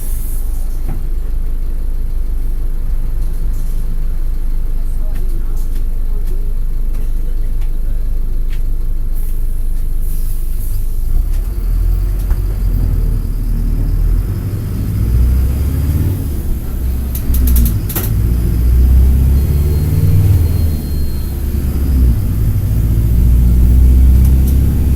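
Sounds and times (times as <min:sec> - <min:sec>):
bus engine rumbling: 0:00.0 - 0:24.9.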